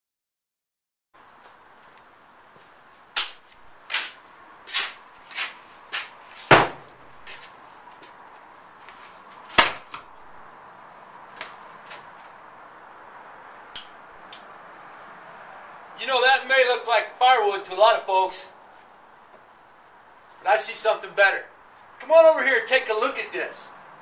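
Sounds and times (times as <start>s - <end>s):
sharp wooden knocks: 6.5s - 7.0s, 9.5s - 10.1s.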